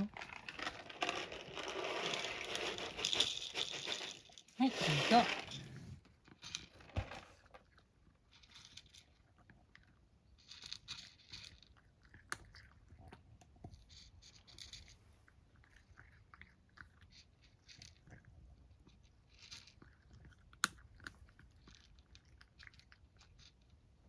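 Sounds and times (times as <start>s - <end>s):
cat crunching dry food: 0.0s - 24.0s.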